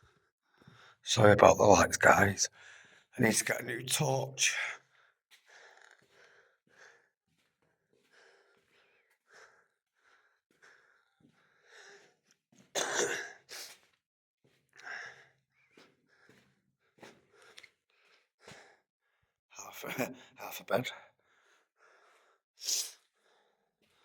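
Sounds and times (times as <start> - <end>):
footsteps scuffing on tunnel floor: 5.3 - 9.3, 13.4 - 14.8, 15.7 - 17.7.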